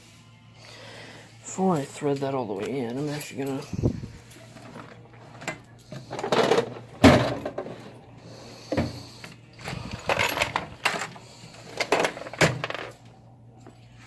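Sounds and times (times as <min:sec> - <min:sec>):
metal tools clattering in toolbox: 0:01.7 - 0:08.0, 0:09.6 - 0:13.0.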